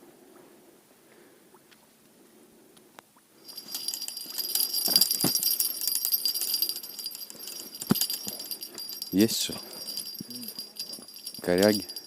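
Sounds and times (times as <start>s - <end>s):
bite alarm bell jingling: 3.4s - 12.0s.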